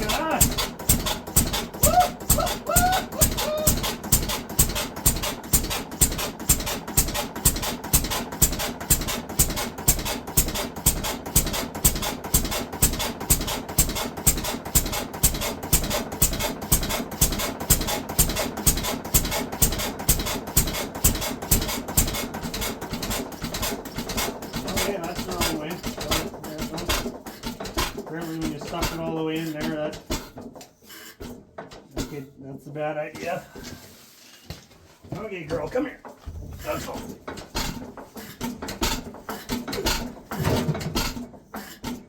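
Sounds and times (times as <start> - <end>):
engine exhaust firing pops: 0.0 - 2.4, 3.8 - 28.0, 37.0 - 42.0.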